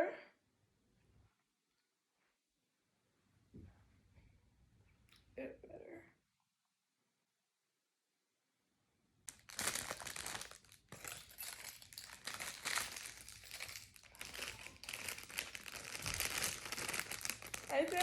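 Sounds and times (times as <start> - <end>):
crinkling and rustling: 9.3 - 18.0.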